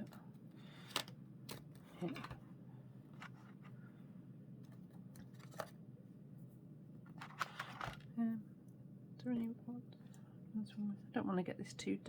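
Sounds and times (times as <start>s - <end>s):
low steady hum: 0.0s - 12.0s
art supplies scratching and rustling: 7.2s - 8.0s.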